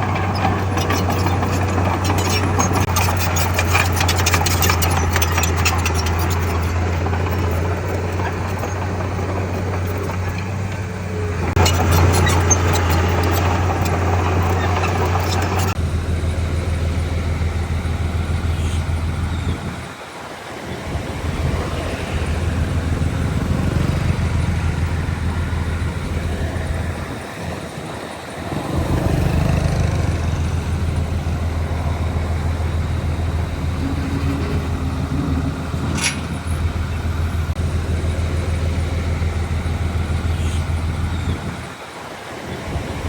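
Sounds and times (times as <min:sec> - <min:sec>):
heavy diesel engine droning: 0:00.0 - 0:43.0
sharp high-pitched squeak: 0:00.2 - 0:08.8, 0:11.6 - 0:15.8.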